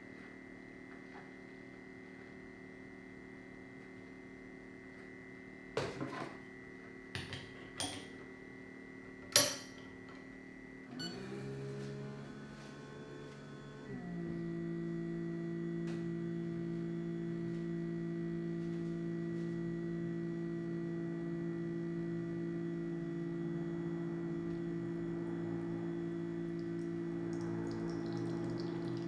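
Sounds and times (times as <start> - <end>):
electric milk frother motor hum: 11.0 - 29.0.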